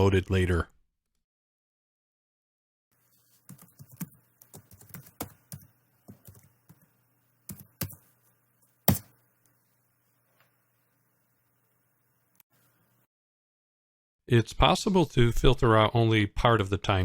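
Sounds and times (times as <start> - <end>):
faint low hum: 3.0 - 13.1.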